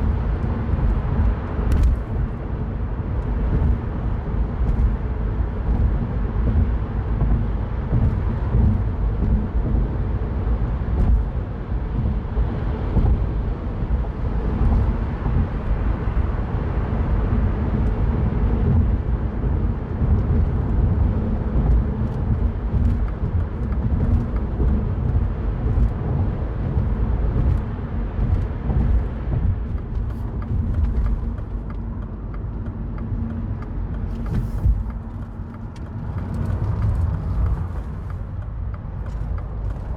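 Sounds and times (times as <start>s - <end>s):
car engine rumble: 0.0s - 39.9s
tyres rumbling on road: 0.0s - 39.9s.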